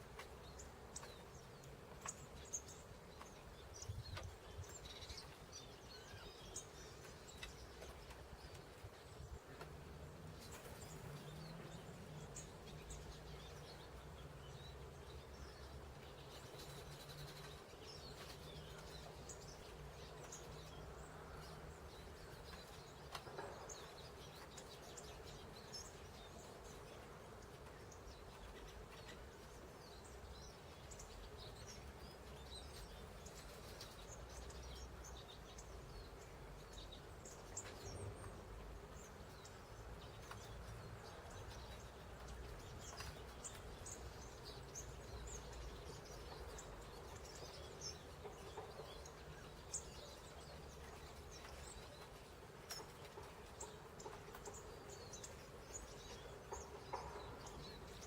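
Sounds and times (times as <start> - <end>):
small birds chirping: 0.0 - 58.0.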